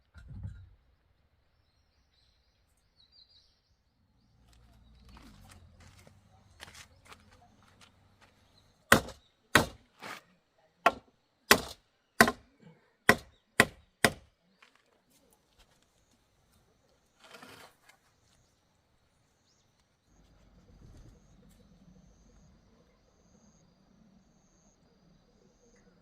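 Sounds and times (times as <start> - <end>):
axe chopping wood: 8.9 - 10.2, 10.9 - 12.4, 13.1 - 14.3.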